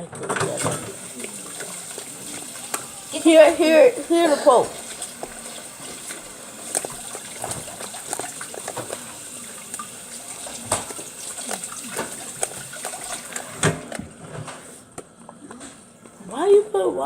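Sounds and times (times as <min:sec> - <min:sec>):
water running from a tap: 0:00.2 - 0:13.9
slime squelching in hands: 0:01.1 - 0:13.5.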